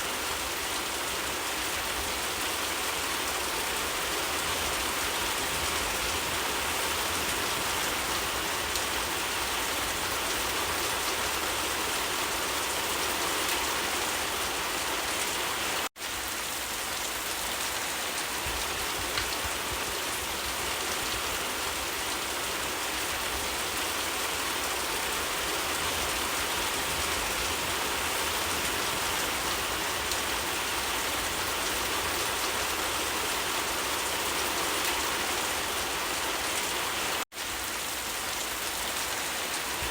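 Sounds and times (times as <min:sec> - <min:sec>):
rain falling on leaves: 0:00.0 - 0:39.9.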